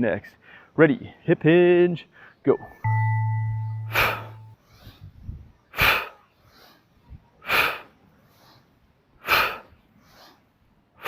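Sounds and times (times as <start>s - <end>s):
man exhaling forcefully: 5.8s - 6.2s, 9.2s - 10.3s.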